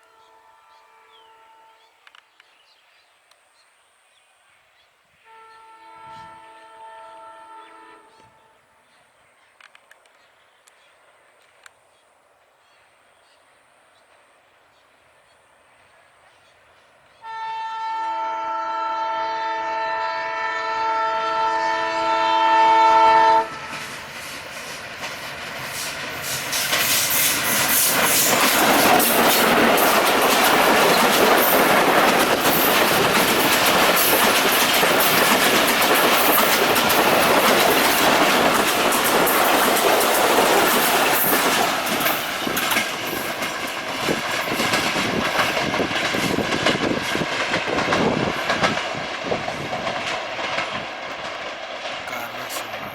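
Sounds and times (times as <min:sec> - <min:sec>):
locomotive horn: 0:00.0 - 0:02.0, 0:05.2 - 0:08.8, 0:17.2 - 0:24.0
train passing at speed: 0:10.8 - 0:52.9
wheels clattering over rail joints: 0:23.8 - 0:52.1.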